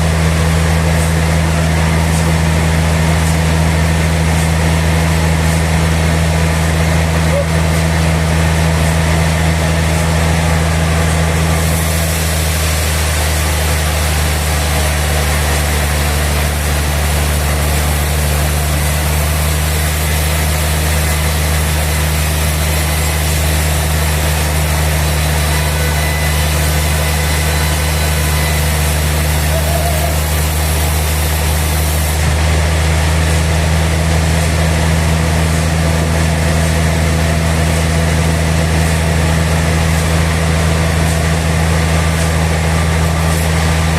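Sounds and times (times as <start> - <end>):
sawmill machinery humming: 0.0 - 43.9
bright hiss: 9.8 - 32.5.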